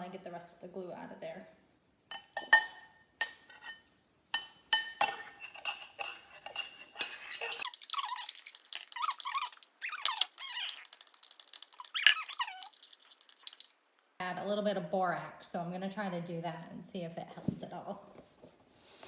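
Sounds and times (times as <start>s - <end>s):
clinks and knocks in bowl: 2.1s - 3.8s, 4.4s - 13.8s
squeaking and scraping in bowl: 5.2s - 13.8s.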